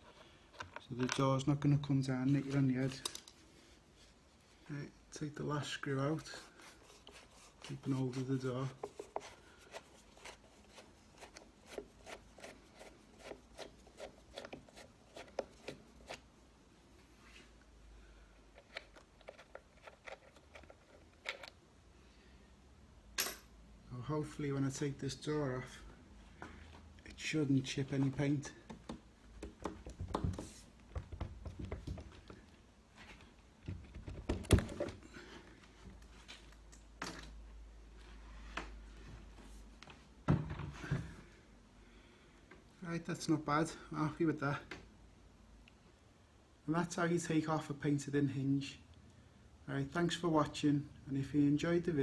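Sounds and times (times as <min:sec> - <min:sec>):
screwdriver clicking and scraping: 0:10.2 - 0:16.2, 0:18.5 - 0:21.6
door knocks and handling noise: 0:28.7 - 0:32.3, 0:33.6 - 0:35.0.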